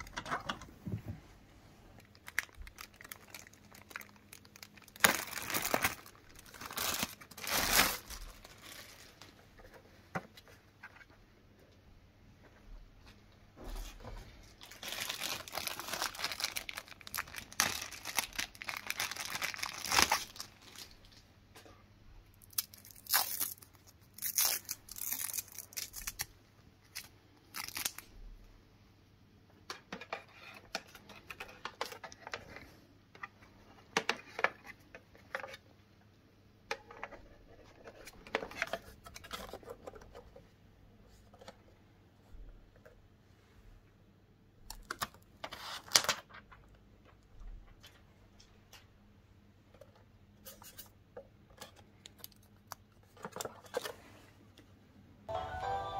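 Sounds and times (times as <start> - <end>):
packaging tearing and crinkling: 2.0 - 9.1, 14.6 - 21.0, 22.4 - 26.3, 26.9 - 28.1.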